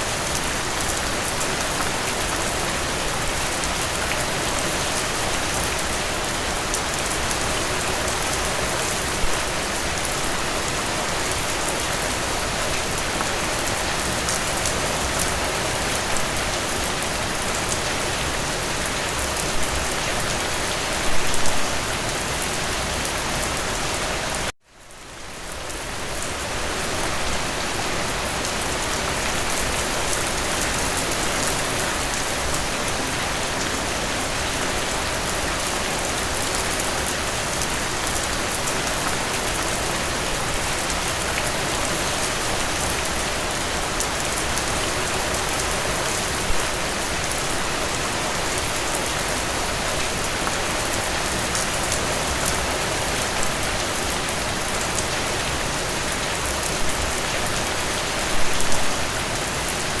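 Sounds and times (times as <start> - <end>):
rain hissing on a surface: 0.0 - 60.0.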